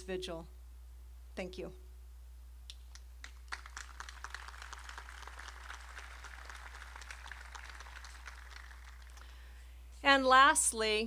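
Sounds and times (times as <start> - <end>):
crowd applauding: 3.2 - 9.4.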